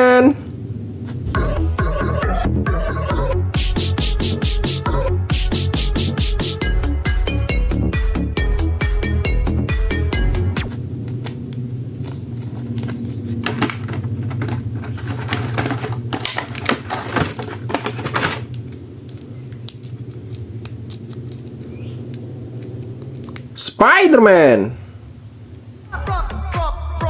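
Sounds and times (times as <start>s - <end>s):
steady low hum: 10.5s - 23.7s
plastic clicks and rattles: 12.0s - 21.6s.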